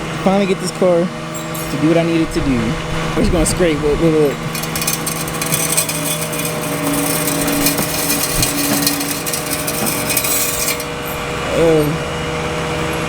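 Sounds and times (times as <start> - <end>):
car underside scraping metal: 4.4 - 11.2.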